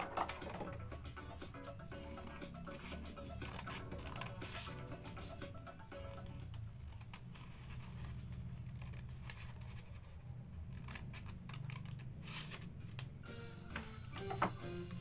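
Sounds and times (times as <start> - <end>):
paper crinkling and creasing: 6.4 - 13.1.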